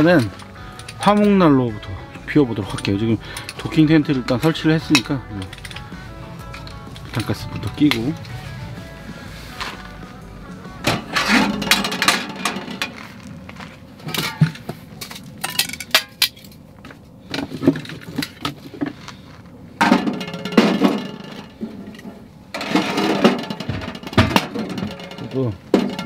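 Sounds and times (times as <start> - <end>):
metallic clinks of camping gear: 0.0 - 8.6, 14.0 - 16.7.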